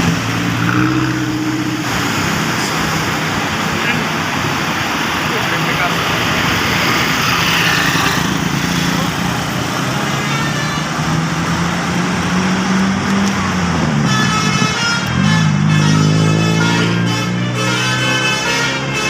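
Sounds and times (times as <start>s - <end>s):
bus engine: 0.0s - 19.0s
people's voices: 1.0s - 11.2s
multi-tone bus horn: 10.0s - 11.2s, 14.0s - 19.0s.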